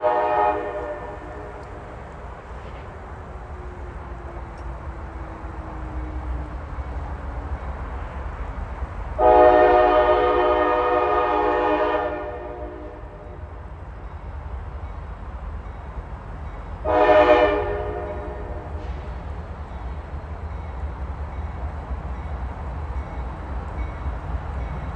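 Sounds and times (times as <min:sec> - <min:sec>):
locomotive air horn blast: 0:00.0 - 0:01.7, 0:09.2 - 0:13.5, 0:16.8 - 0:19.1
low rumble of locomotives: 0:00.0 - 0:24.9.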